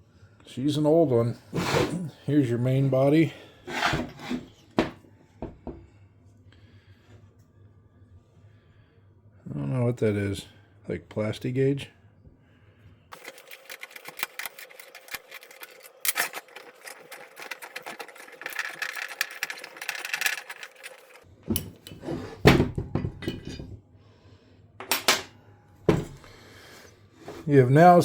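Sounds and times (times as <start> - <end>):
metal clicking and scraping: 13.1 - 22.0.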